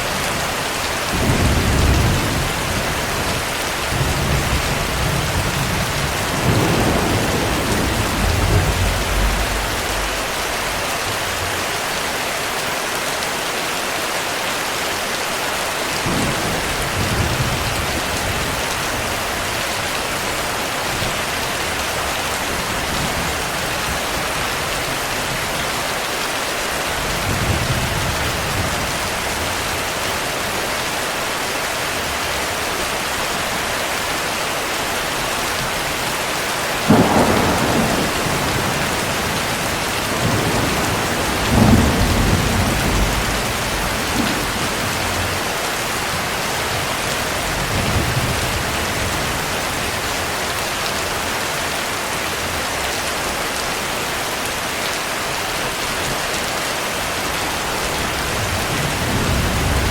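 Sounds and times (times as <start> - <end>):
heavy rain: 0.0 - 59.9
thunder rumbling: 0.1 - 11.5, 36.8 - 50.0, 57.6 - 59.9
loud thunderclap: 3.9 - 10.9, 36.9 - 45.5.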